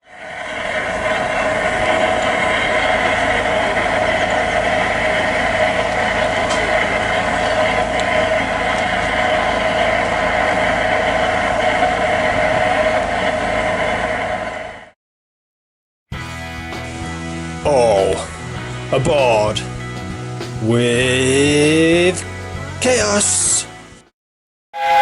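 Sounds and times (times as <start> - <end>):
train running: 0.1 - 14.9, 24.8 - 25.0.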